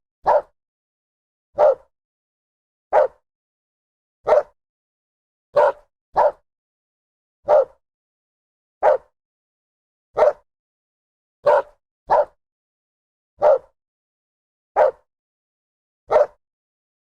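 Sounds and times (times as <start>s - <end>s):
dog barking: 0.2s - 0.6s, 1.6s - 1.9s, 2.9s - 3.2s, 4.2s - 4.6s, 5.5s - 6.4s, 7.4s - 7.8s, 8.8s - 9.1s, 10.2s - 10.5s, 11.4s - 12.4s, 13.4s - 13.8s, 14.8s - 15.1s, 16.1s - 16.4s.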